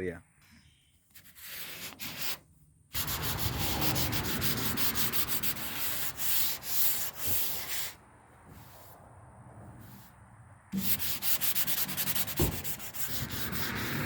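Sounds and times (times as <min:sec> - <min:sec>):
sandpaper rubbing on metal: 0:01.2 - 0:02.4, 0:03.0 - 0:08.0, 0:10.8 - 0:14.0.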